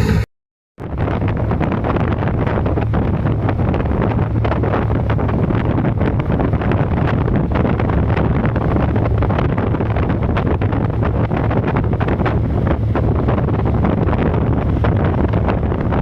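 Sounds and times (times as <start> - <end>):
ferry engines droning: 0.0 - 0.3
wind buffeting microphone: 0.8 - 16.0.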